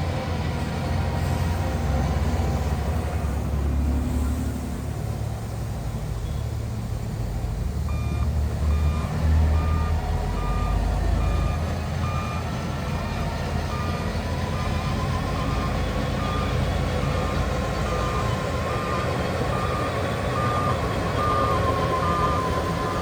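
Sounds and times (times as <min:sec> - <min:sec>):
diesel engine rumble: 0:00.0 - 0:23.0
reversing alarm beeping: 0:07.9 - 0:12.5, 0:13.7 - 0:23.0.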